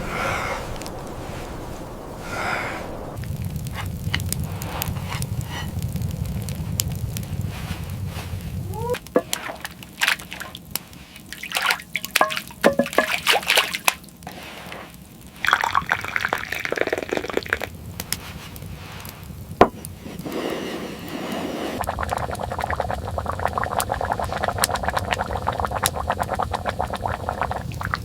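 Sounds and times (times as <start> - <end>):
water dripping and sloshing: 3.2 - 19.8.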